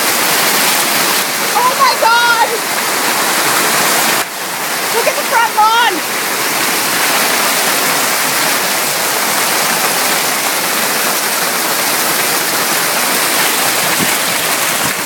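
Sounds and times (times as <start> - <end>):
torrential rain pouring: 0.0 - 15.0.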